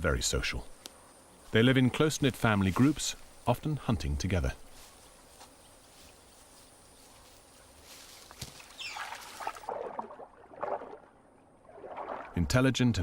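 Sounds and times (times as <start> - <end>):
otters splashing in water: 8.4 - 12.6.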